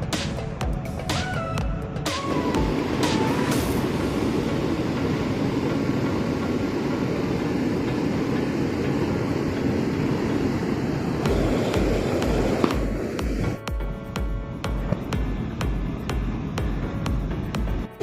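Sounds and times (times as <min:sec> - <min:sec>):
waterfall rushing: 0:02.2 - 0:13.6.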